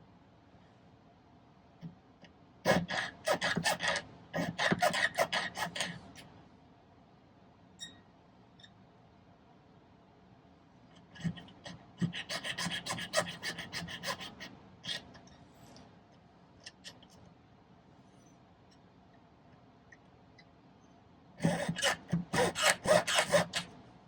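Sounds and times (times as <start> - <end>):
saw cutting metal wire: 2.7 - 5.9, 12.0 - 14.4, 21.4 - 23.7.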